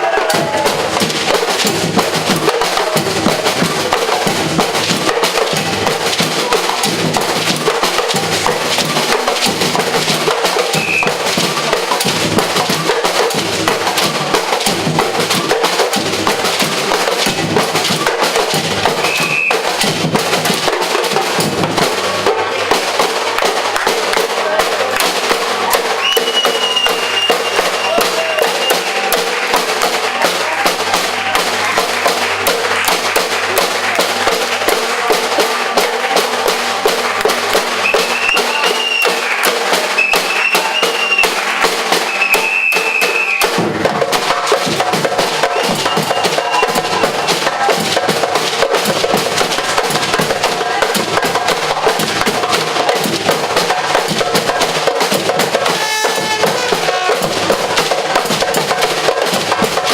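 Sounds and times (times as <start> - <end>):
fast percussion drumming: 0.0 - 59.9
short whistle calls: 10.7 - 11.2, 19.0 - 19.7, 26.0 - 29.0, 37.8 - 39.3, 40.0 - 41.4, 42.0 - 43.5, 45.5 - 47.2.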